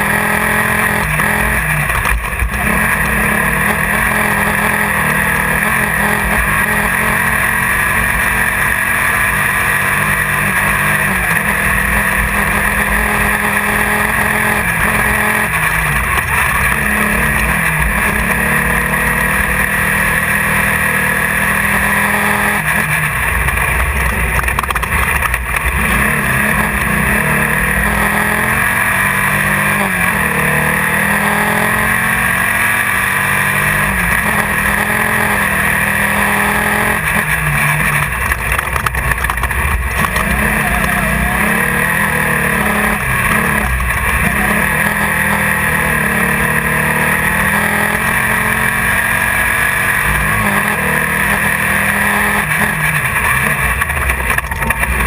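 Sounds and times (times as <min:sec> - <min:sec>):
race car engine running hard: 0:00.0 - 0:55.0
steady rushing noise: 0:00.0 - 0:55.0.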